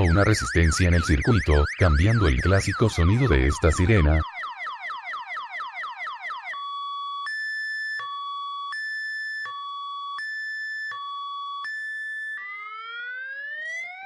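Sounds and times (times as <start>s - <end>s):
car alarm siren: 0.0s - 14.0s.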